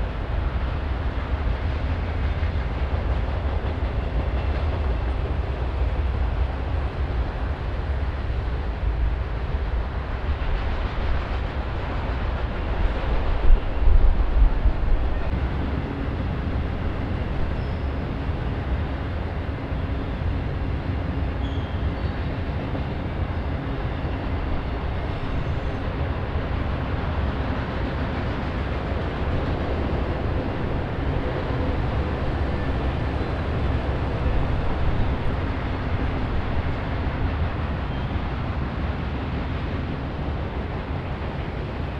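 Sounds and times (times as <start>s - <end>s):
train rumbling on track: 0.0s - 41.9s
faint tones: 15.3s - 36.3s.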